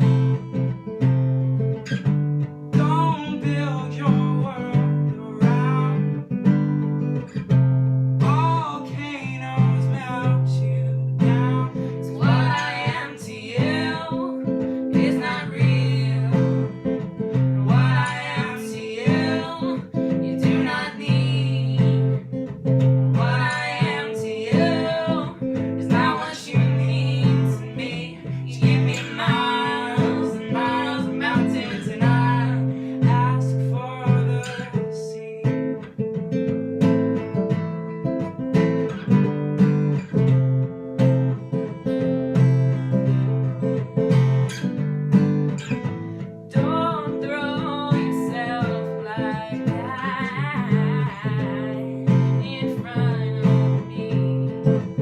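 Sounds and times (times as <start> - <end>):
acoustic guitar playing: 0.0 - 55.0
person singing: 2.8 - 6.2, 8.2 - 16.8, 17.5 - 22.2, 23.1 - 35.8, 46.5 - 55.0.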